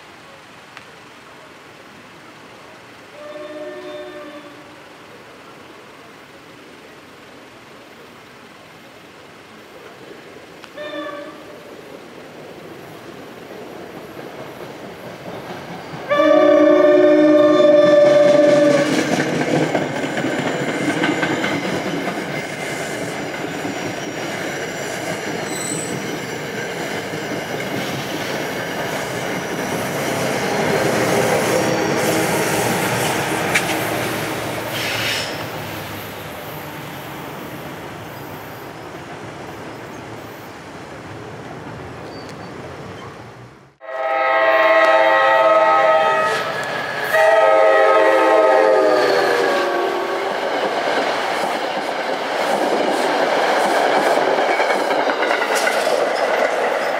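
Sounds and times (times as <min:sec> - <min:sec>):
train passing with heavy rumble: 0:00.0 - 0:56.9
train horn blast: 0:03.2 - 0:04.8, 0:10.7 - 0:11.6, 0:16.1 - 0:19.0, 0:43.8 - 0:50.3
wheels clattering over rail joints: 0:50.4 - 0:56.9.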